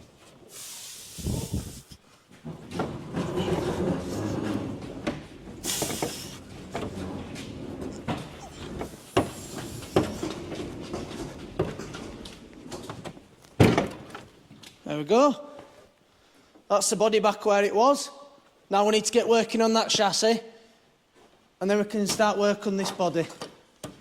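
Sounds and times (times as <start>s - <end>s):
trolley wheels rumbling on concrete: 1.3s - 13.5s.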